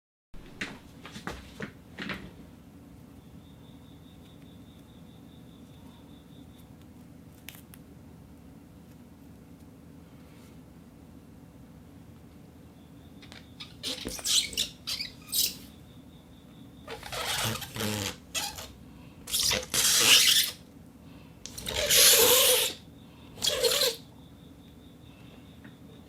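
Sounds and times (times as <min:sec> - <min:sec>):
rubber band rubbing on board: 0:13.8 - 0:15.6, 0:16.9 - 0:18.7, 0:19.3 - 0:20.6, 0:21.5 - 0:22.8, 0:23.4 - 0:24.0.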